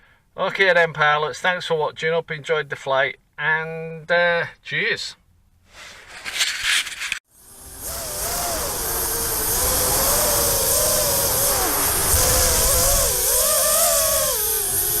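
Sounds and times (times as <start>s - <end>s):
drone motors whining: 7.3s - 15.0s
heavy wind: 7.5s - 15.0s.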